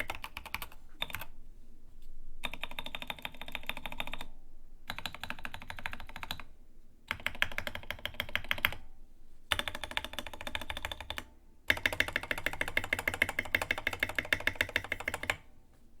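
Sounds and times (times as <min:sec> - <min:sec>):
mechanical keyboard typing: 0:00.0 - 0:01.3, 0:02.4 - 0:04.2, 0:04.9 - 0:06.5, 0:07.1 - 0:08.8, 0:09.5 - 0:15.5.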